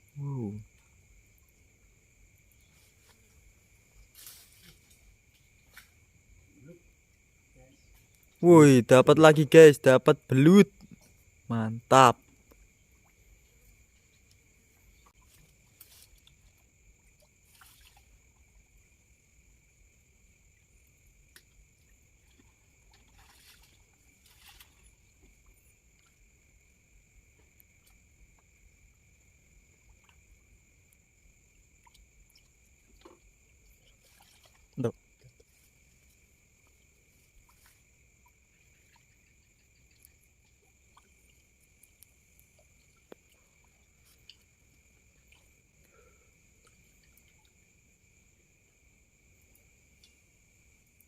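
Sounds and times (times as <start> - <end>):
faint ticks: 12.2 - 19.0, 20.6 - 51.0
water splashing: 15.1 - 18.8, 21.5 - 26.5, 31.6 - 48.0.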